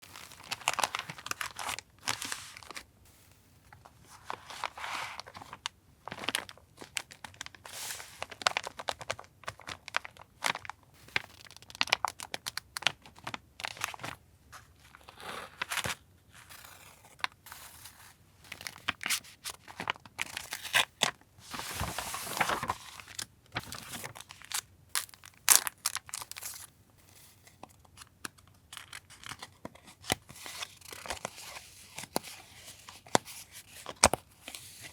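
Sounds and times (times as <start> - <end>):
paper crinkling and tearing: 14.9 - 26.7.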